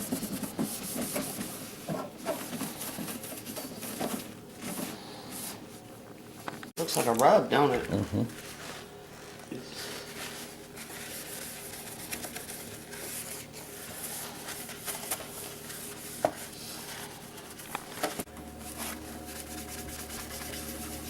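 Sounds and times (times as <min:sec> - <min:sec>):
low steady hum: 0:00.0 - 0:21.0
rubbing and scrubbing on turntable: 0:18.6 - 0:21.0.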